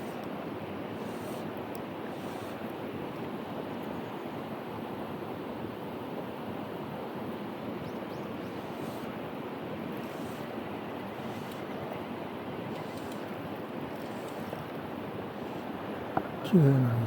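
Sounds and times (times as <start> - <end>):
stream water rushing over rocks: 4.7 - 17.0.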